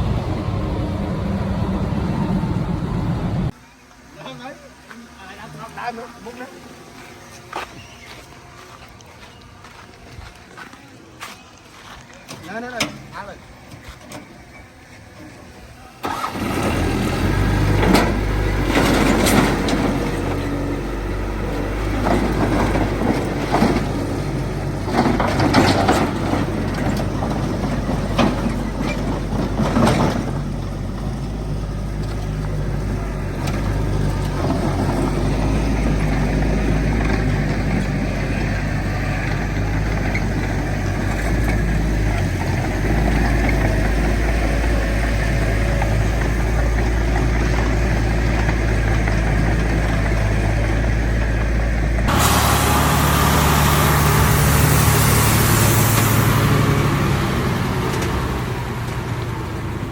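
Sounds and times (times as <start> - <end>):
heavy diesel engine droning: 0.0 - 59.9.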